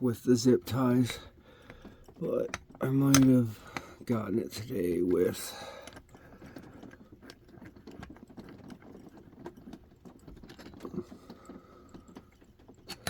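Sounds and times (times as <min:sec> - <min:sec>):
lock pick metallic clicking: 0:01.0 - 0:04.0, 0:12.3 - 0:13.0.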